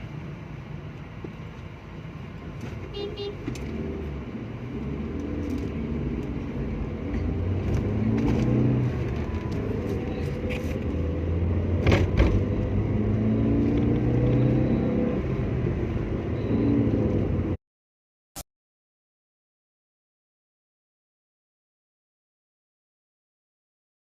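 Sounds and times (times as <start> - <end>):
car engine and road rumble: 0.0 - 17.6.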